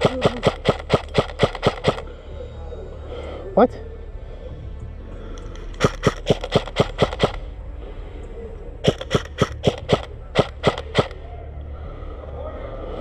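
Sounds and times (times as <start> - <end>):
airsoft rifle single shots: 0.0 - 2.0, 5.8 - 7.4, 8.8 - 11.2.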